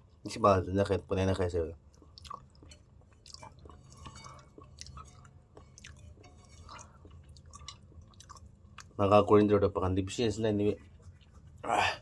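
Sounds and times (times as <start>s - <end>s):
person chewing noodles: 1.8s - 9.0s, 10.8s - 12.0s.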